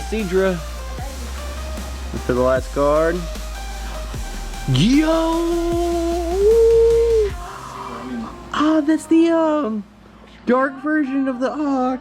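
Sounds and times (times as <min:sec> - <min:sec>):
man shouting excitedly: 0:04.7 - 0:07.4.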